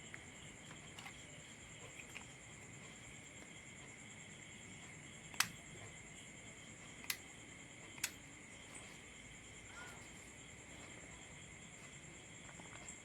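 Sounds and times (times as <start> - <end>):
sharp clicks: 5.4 - 5.6, 8.0 - 8.2.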